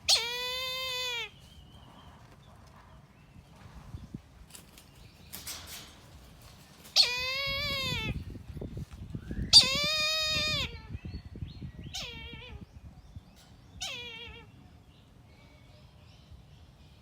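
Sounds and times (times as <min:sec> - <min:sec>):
kite mewing calls: 0:07.0 - 0:08.2.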